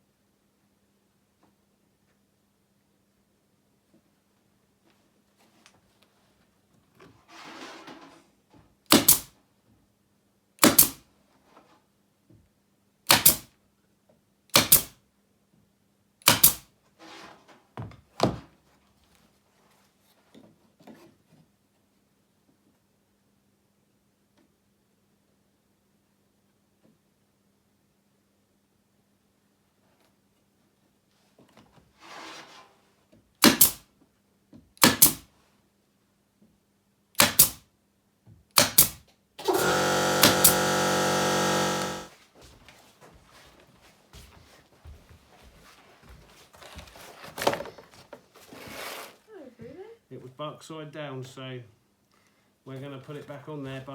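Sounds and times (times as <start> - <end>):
faint scrape: 7.2 - 8.3, 31.9 - 33.0, 48.4 - 49.3
hammer blows on wooden boards: 14.6 - 14.9, 16.3 - 16.6, 34.8 - 35.2, 37.2 - 37.6, 38.6 - 42.1.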